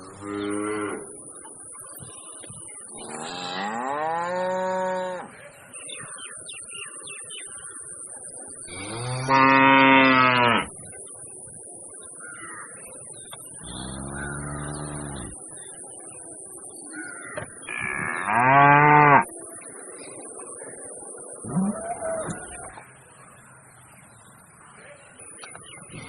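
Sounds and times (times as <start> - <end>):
bull mooing: 21.4 - 22.8.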